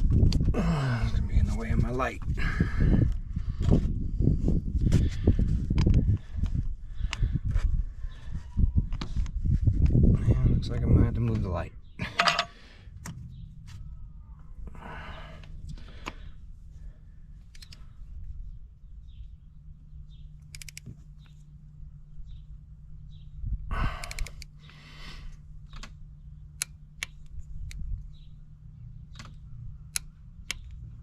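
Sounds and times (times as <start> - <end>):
low hum: 11.6 - 31.0.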